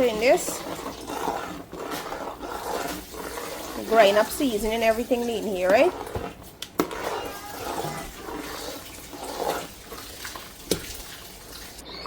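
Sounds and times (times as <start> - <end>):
water pouring into a pot: 7.3 - 11.8.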